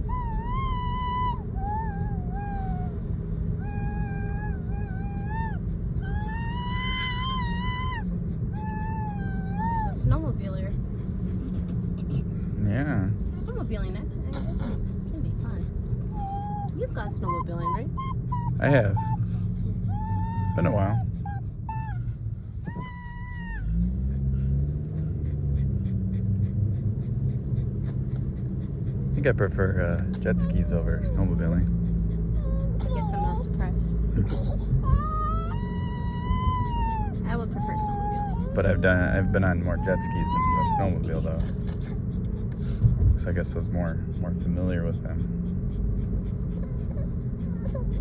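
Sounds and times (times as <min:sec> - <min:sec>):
car road noise rumble: 0:00.0 - 0:48.0
puppy whining: 0:00.0 - 0:48.0.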